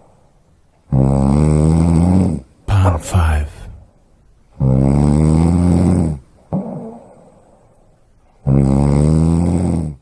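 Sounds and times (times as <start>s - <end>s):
loud snoring: 0.9s - 2.4s, 4.6s - 7.0s, 8.4s - 10.0s.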